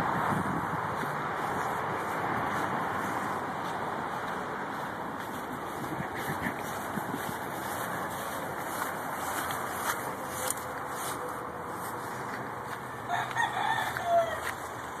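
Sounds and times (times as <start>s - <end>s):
rooster crowing: 12.9s - 14.6s.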